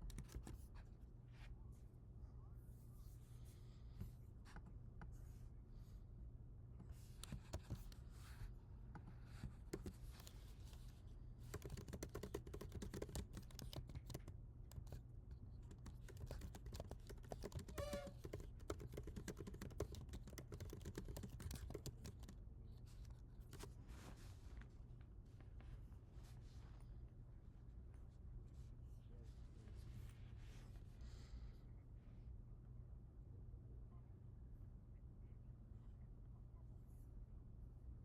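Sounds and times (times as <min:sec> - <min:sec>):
typing on computer keyboard: 0:00.0 - 0:00.7, 0:09.7 - 0:10.8, 0:11.4 - 0:15.0, 0:15.6 - 0:23.7
low steady hum: 0:00.0 - 0:38.0.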